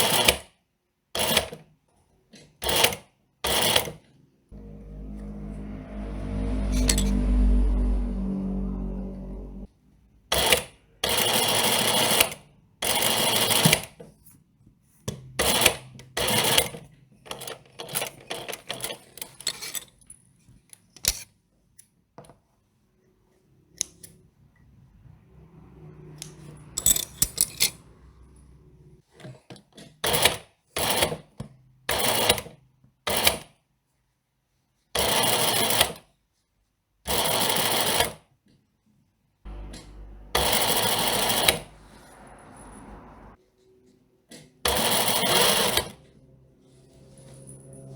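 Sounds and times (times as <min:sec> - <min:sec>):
sewing machine stitching: 0:00.0 - 0:00.5, 0:01.2 - 0:01.6, 0:02.6 - 0:04.0, 0:10.3 - 0:14.0, 0:15.4 - 0:19.7, 0:35.0 - 0:36.0, 0:37.1 - 0:38.2, 0:39.5 - 0:43.1, 0:44.7 - 0:46.0
faint low hum: 0:04.6 - 0:09.7, 0:39.5 - 0:43.8.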